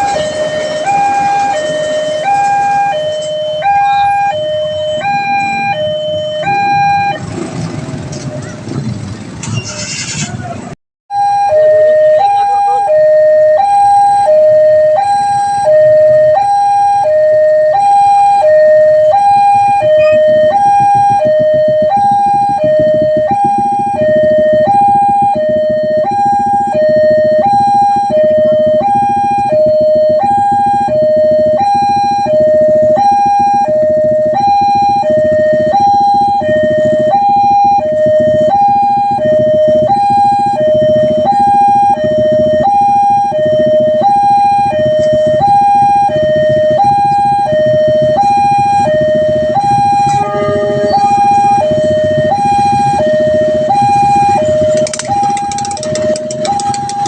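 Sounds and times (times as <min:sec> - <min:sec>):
two-tone electronic warning alarm: 0:00.0 - 0:07.4, 0:11.1 - 0:57.0
low rumble: 0:43.3 - 0:54.8.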